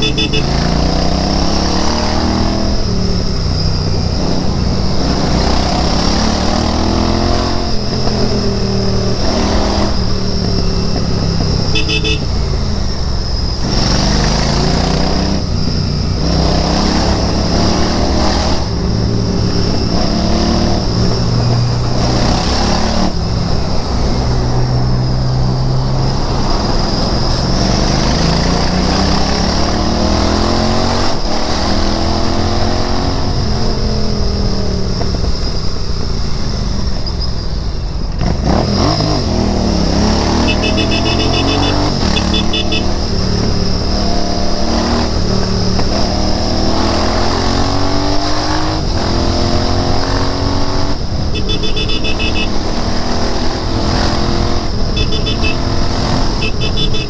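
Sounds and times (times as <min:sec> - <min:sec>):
high electronic beeping: 0:00.0 - 0:00.7, 0:10.6 - 0:13.1, 0:40.2 - 0:43.0, 0:51.4 - 0:52.8, 0:55.0 - 0:55.7, 0:56.3 - 0:57.0
motorcycle engine revving: 0:00.0 - 0:35.6, 0:38.2 - 0:57.0.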